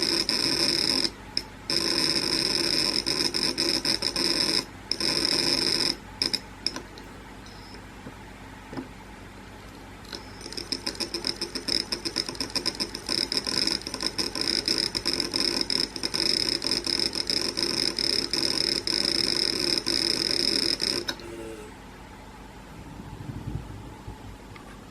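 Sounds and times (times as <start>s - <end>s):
hard drive chattering buzz: 0.0s - 8.1s, 10.0s - 22.7s
high whine: 12.0s - 24.9s.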